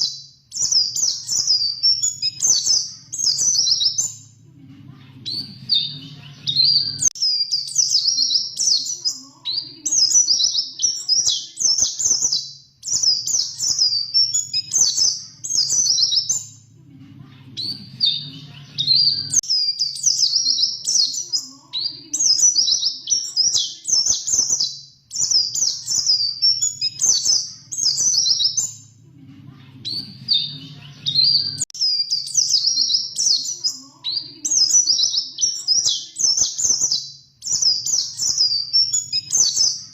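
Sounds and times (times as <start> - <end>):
bird twittering song: 0.0 - 4.4, 5.2 - 16.7, 17.6 - 29.0, 29.8 - 39.9
faint low hum: 2.8 - 7.0, 15.9 - 19.3, 28.6 - 31.5.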